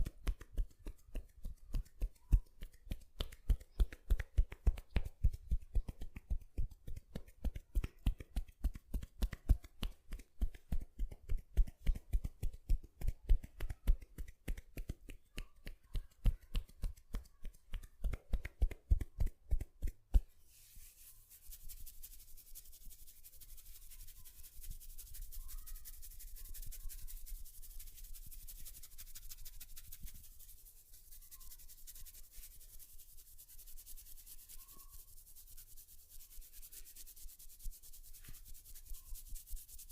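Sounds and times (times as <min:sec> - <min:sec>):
rapid hand tapping on head: 0:00.0 - 0:20.2
hands rubbing hair and scalp: 0:00.0 - 0:39.9.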